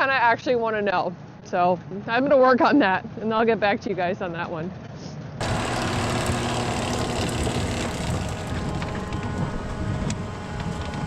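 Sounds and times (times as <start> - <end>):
farm machinery engine running: 5.4 - 11.0.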